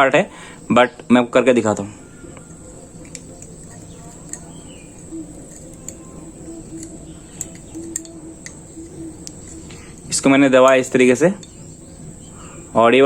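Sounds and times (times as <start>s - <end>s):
light clicks of small metal parts: 1.7s - 6.1s, 6.7s - 11.7s
bird cooing: 1.9s - 13.0s.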